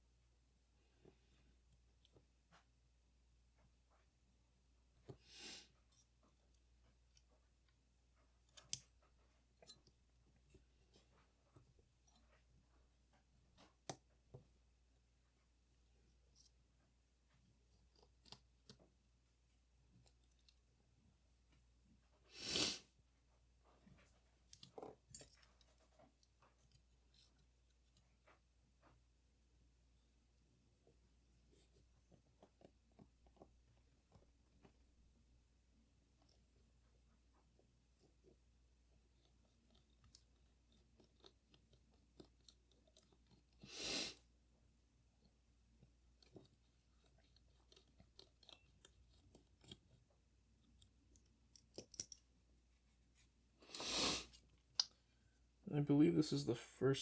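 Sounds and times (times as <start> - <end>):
small tool and metal clicks: 8.4 - 9.0, 46.2 - 52.3
tools and metal parts clicking: 50.7 - 52.2
short hiss: 53.8 - 54.3.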